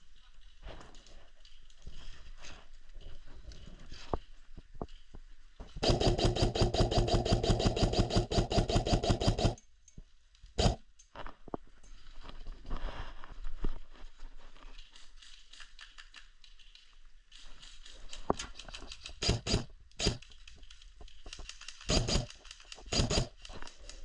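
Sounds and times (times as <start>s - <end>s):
airsoft gun full-auto burst: 5.8s - 9.6s, 10.6s - 10.8s, 19.2s - 20.2s, 21.8s - 23.3s.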